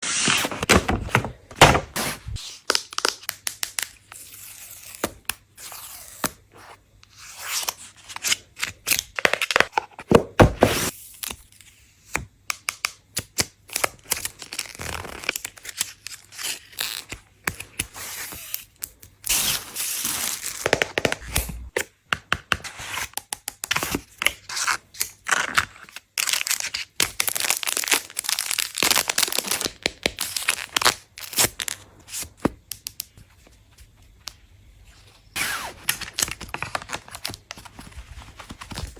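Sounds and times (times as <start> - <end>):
tearing and crinkling packaging: 24.6 - 31.8.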